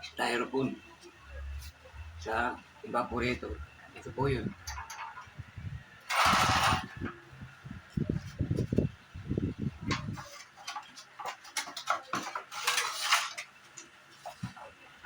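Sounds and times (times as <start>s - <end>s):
rubbing or scraping: 6.1s - 7.2s, 9.8s - 13.5s.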